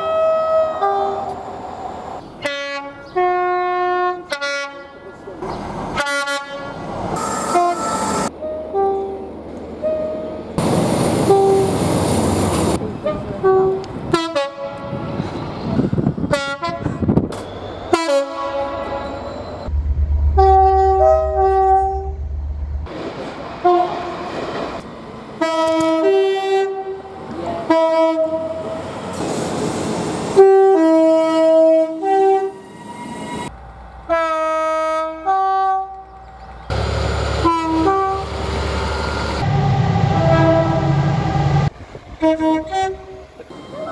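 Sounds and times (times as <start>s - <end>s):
two-tone train horn: 0.0s - 1.4s, 2.4s - 5.0s, 6.0s - 10.3s, 11.1s - 12.1s, 13.0s - 15.3s, 16.3s - 17.1s, 17.9s - 22.3s, 23.6s - 24.2s, 25.4s - 28.8s, 30.4s - 32.7s, 33.5s - 36.1s, 36.7s - 43.9s
passing train noise: 0.0s - 43.9s.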